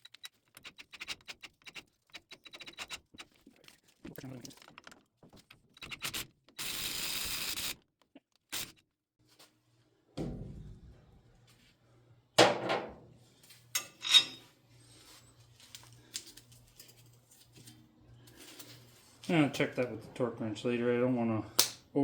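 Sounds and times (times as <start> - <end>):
dull thud: 10.2 - 11.0.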